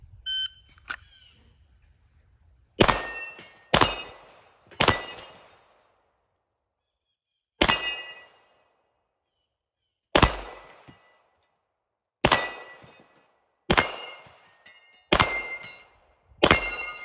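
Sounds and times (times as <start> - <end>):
pistol shots: 2.8 - 5.7, 7.6 - 8.4, 10.2 - 11.0, 12.2 - 13.1, 13.7 - 14.4, 15.1 - 15.7, 16.4 - 17.0
steel plates ringing: 2.9 - 4.1, 13.8 - 17.0.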